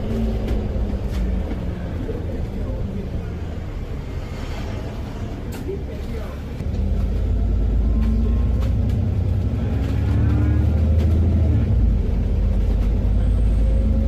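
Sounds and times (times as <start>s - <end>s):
bus engine drone: 0.0s - 14.0s.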